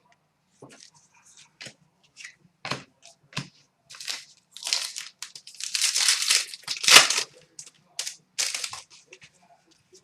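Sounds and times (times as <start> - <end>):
foil wrapper crinkling: 3.9 - 7.4, 8.0 - 8.8.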